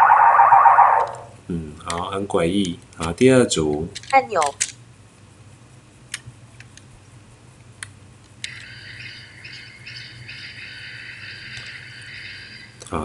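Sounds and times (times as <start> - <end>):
eerie bird calls chirring: 8.6 - 12.8.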